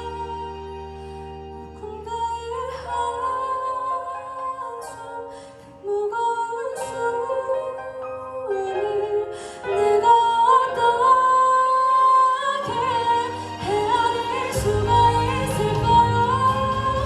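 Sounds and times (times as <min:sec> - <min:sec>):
woman singing a slow ballad: 0:00.0 - 0:17.0
instrumental accompaniment: 0:08.3 - 0:17.0
deep bass notes: 0:12.8 - 0:17.0.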